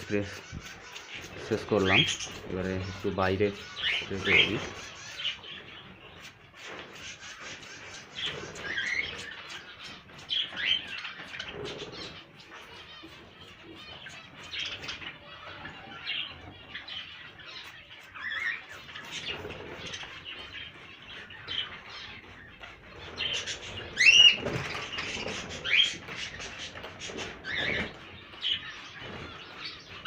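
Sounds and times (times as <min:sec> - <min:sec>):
birds chirping: 0:00.0 - 0:30.0
wings flapping: 0:18.8 - 0:30.0.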